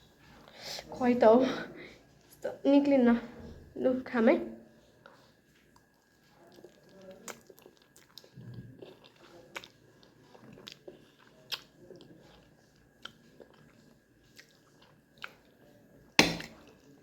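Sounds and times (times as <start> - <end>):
chewing noodles: 5.0 - 15.7.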